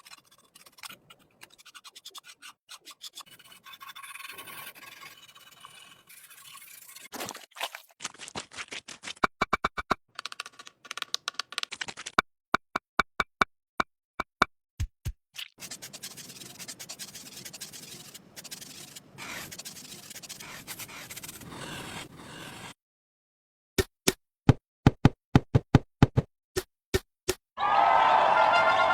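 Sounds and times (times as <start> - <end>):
scraping and rubbing: 0.0 - 7.2, 15.4 - 22.8.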